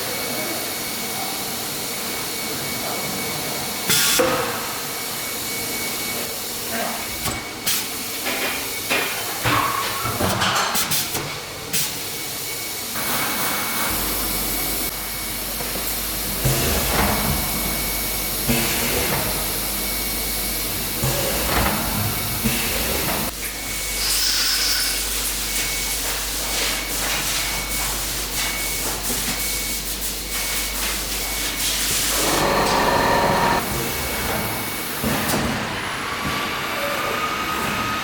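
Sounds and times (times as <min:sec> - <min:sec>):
wood router hissing: 0:32.1 - 0:33.6.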